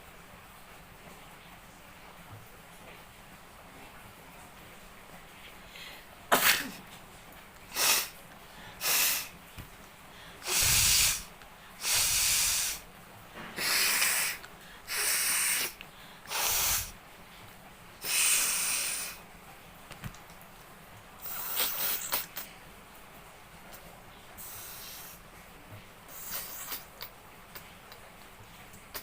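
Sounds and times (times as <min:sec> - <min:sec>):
person sneezing: 0:06.3 - 0:06.8
air blown out through nose: 0:10.4 - 0:12.8, 0:13.6 - 0:17.0, 0:26.1 - 0:27.1.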